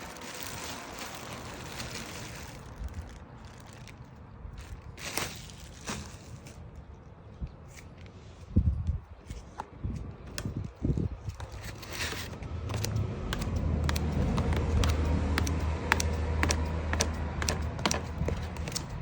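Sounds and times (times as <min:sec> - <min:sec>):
blade chopping spaghetti: 0:12.7 - 0:19.0.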